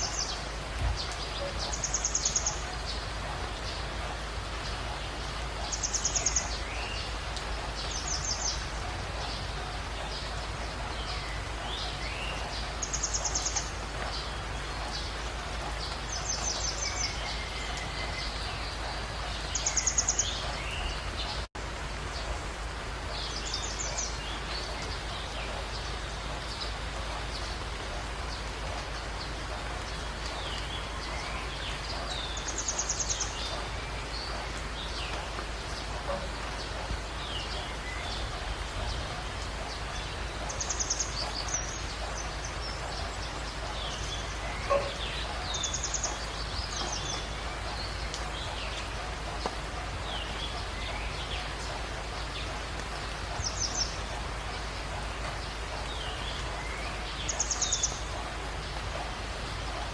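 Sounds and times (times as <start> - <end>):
background hiss: 0.0 - 59.9
birds chirping: 0.0 - 59.9.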